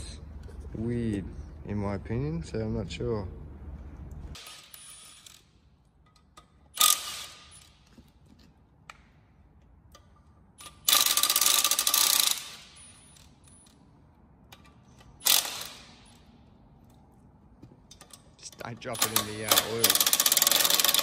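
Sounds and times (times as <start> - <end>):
impact wrench rattling: 4.3 - 8.6, 9.9 - 17.0, 17.7 - 21.0.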